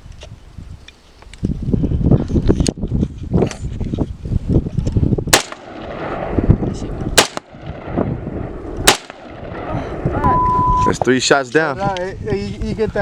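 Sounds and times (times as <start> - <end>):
wind buffeting microphone: 0.0 - 13.0
rifle gunshots: 5.3 - 6.5, 7.1 - 10.0.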